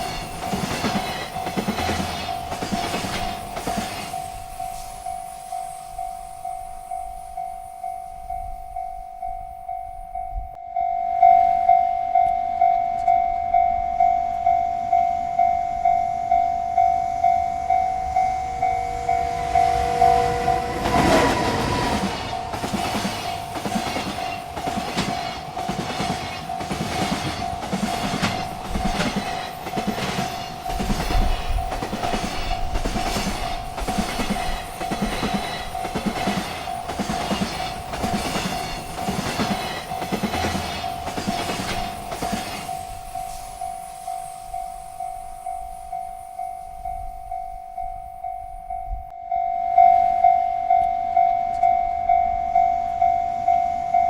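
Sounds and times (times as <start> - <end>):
train wheels clacking on rails: 0.0 - 9.9, 12.2 - 49.1
railroad crossing bell ringing: 0.0 - 54.0.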